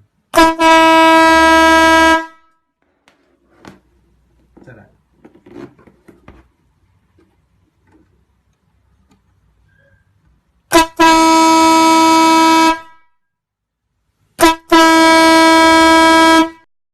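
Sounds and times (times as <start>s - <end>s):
electric air horn blast: 0.3s - 2.6s, 10.7s - 13.1s, 14.4s - 16.7s
short horn blip: 10.7s - 13.0s.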